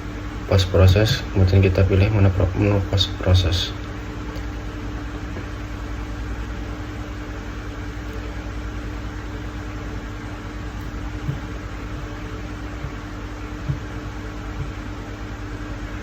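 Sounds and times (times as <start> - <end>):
fan hum: 0.0 - 16.0
soft short knocks: 10.8 - 12.2.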